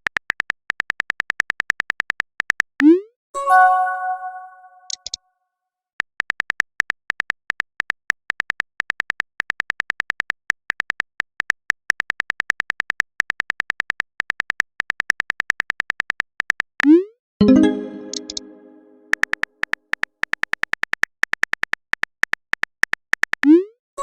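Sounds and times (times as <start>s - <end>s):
message notification chime: 3.4s - 5.0s, 17.4s - 19.1s
keyboard typing clicks: 4.3s - 5.2s, 13.3s - 23.6s.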